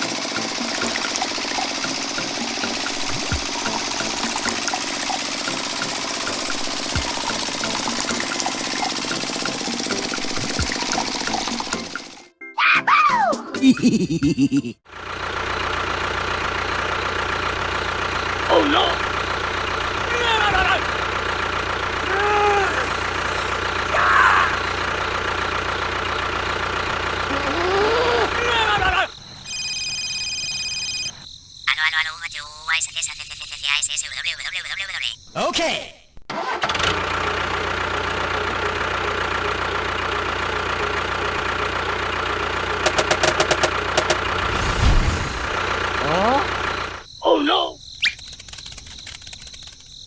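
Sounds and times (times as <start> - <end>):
small motor humming: 0.0 - 12.3, 16.5 - 28.5
short voice-like cry: 20.1 - 20.9, 22.0 - 23.0, 23.9 - 24.6, 27.3 - 29.1
sharp clicks: 42.8 - 45.6, 48.0 - 50.0
brief rasping burst: 42.8 - 45.9.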